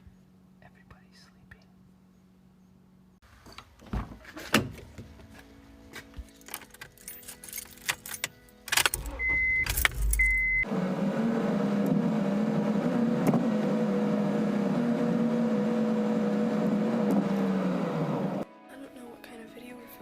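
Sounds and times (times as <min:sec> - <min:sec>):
keys jangling: 0:06.2 - 0:10.4
car engine starting and running: 0:08.7 - 0:18.4
short beeps: 0:09.0 - 0:10.6.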